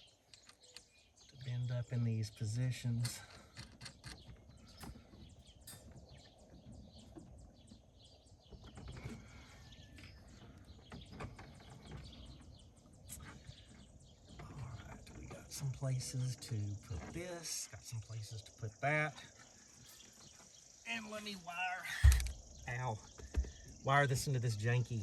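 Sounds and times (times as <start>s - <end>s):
small clicks: 0.2s - 1.4s.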